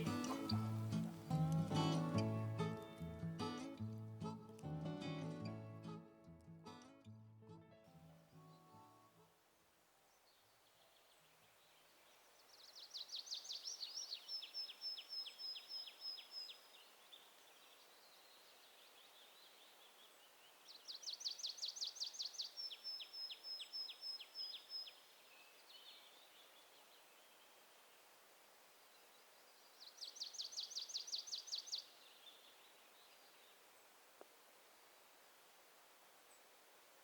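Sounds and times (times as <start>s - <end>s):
songbird singing with high trill: 0.0s - 3.0s, 10.3s - 27.6s, 29.6s - 33.6s.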